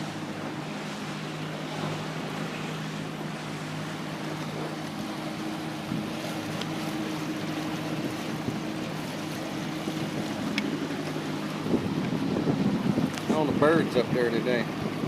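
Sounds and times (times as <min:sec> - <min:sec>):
boat motor humming: 0:00.0 - 0:15.0
water rushing past hull: 0:00.0 - 0:15.0
wind: 0:00.0 - 0:15.0.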